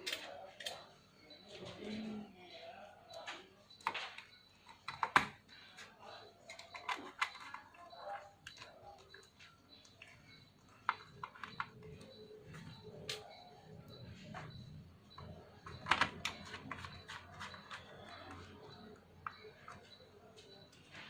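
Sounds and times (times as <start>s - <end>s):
plastic laptop parts clicking: 3.2s - 5.4s, 6.4s - 9.3s, 10.8s - 13.4s, 15.2s - 18.5s.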